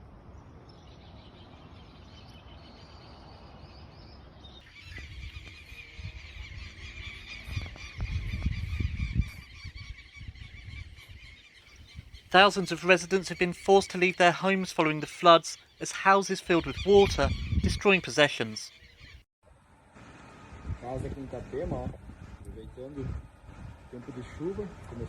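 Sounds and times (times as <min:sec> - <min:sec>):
bird calls chorus: 0:01.0 - 0:19.2.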